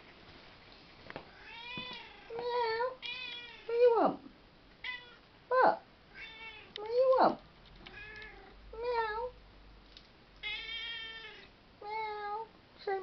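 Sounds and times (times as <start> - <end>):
cat meowing: 1.3 - 3.7, 4.8 - 5.2, 6.1 - 6.8, 7.9 - 9.3, 10.4 - 12.5.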